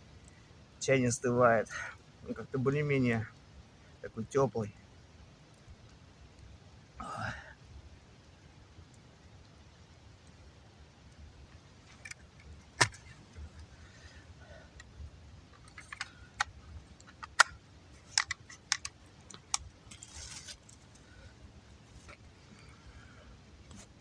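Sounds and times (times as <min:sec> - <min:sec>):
campfire crackling and popping: 0:05.0 - 0:07.0.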